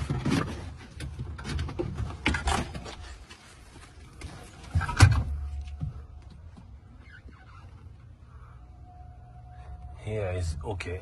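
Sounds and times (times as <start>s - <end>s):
handling knocks and rattles: 0.0s - 7.4s
low steady hum: 0.0s - 11.0s.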